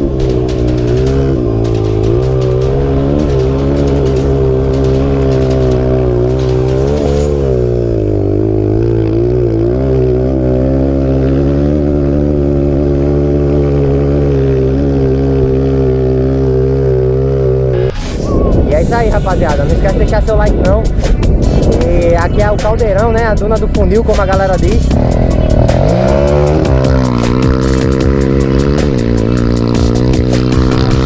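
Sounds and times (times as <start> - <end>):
motorcycle engine revving: 0.0 - 18.0, 19.1 - 31.0.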